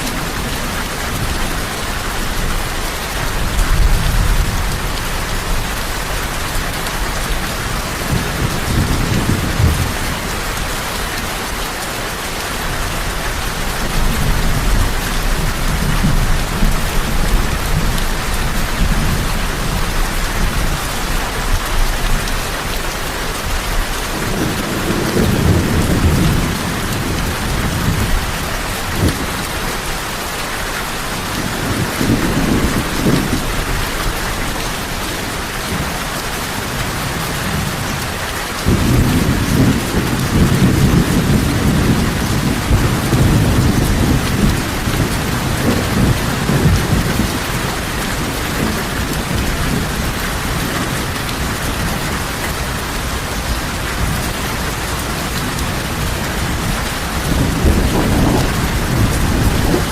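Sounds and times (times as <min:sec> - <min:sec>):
heavy rain: 0:00.0 - 0:59.9
thunder rumbling: 0:36.6 - 0:59.9.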